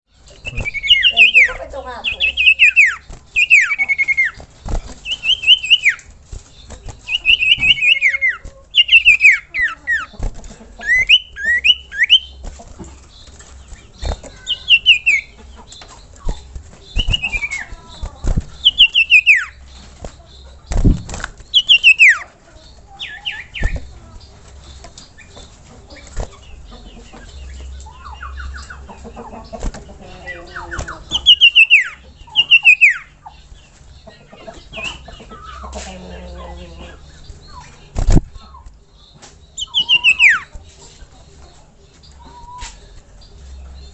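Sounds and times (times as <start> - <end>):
bird whistling song: 0.3 - 10.2, 10.8 - 12.4, 13.2 - 22.3, 22.9 - 24.0, 30.2 - 33.3, 37.4 - 40.6, 42.2 - 42.9.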